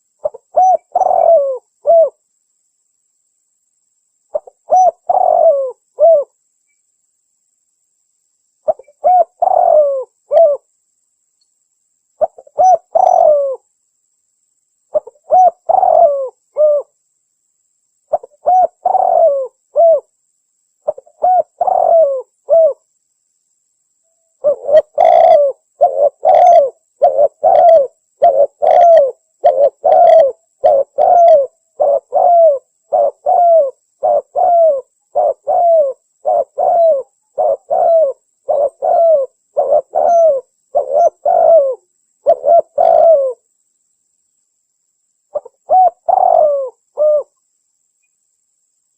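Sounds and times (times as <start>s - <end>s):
dove cooing: 0.0s - 2.2s, 4.3s - 6.4s, 8.7s - 10.7s, 12.2s - 13.6s, 14.9s - 16.9s, 18.1s - 20.1s, 20.8s - 22.8s, 24.4s - 43.4s, 45.3s - 47.4s.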